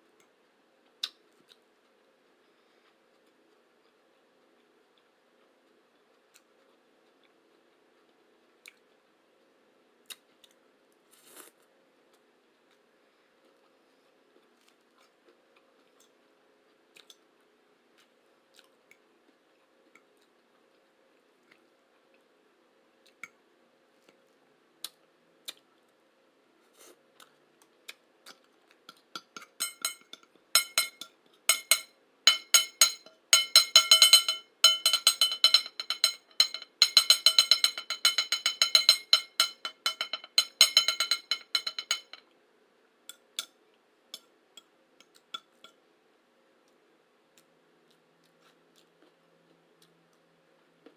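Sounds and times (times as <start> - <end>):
cutlery clicking and scraping on plate: 28.9 - 42.2.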